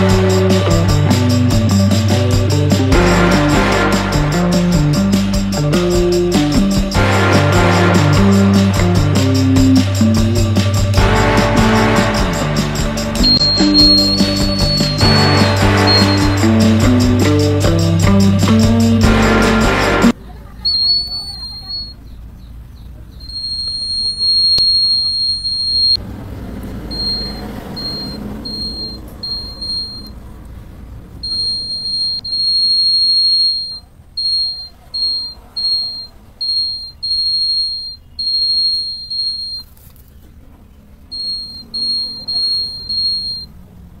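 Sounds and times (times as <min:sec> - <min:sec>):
high-pitched alarm buzzer: 0:11.6 - 0:17.2, 0:23.3 - 0:26.0, 0:26.9 - 0:30.1, 0:31.2 - 0:39.6, 0:41.2 - 0:43.5.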